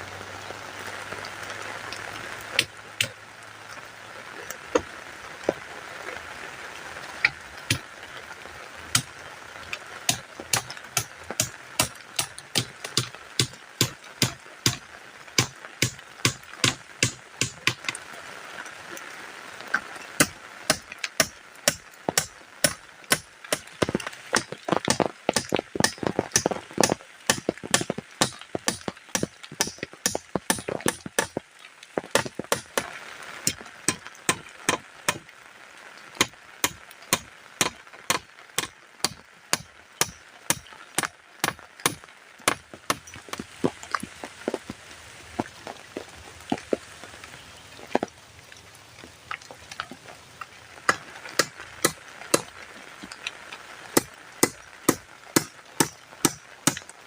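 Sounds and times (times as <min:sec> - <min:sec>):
rain hiss: 0:00.0 - 0:57.0
sharp chopping strikes: 0:15.4 - 0:17.9, 0:20.2 - 0:31.4.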